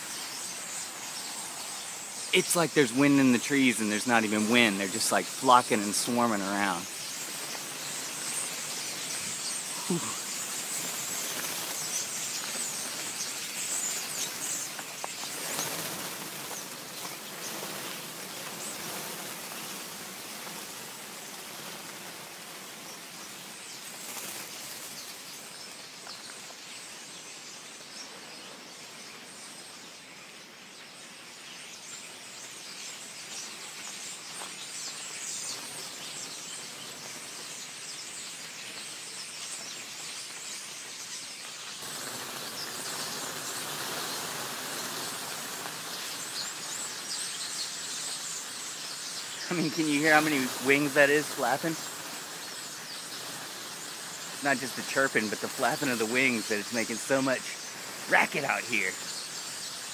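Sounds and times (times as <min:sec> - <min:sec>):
birds chirping: 0:00.0 - 0:59.9
wings flapping: 0:02.9 - 0:25.5, 0:41.8 - 0:47.1, 0:49.2 - 0:59.9.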